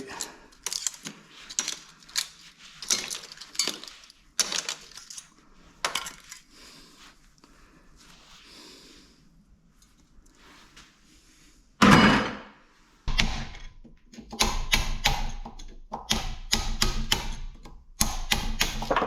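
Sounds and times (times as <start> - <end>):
metal parts clinking: 0.0 - 6.5
scraping and rustling: 0.0 - 7.4.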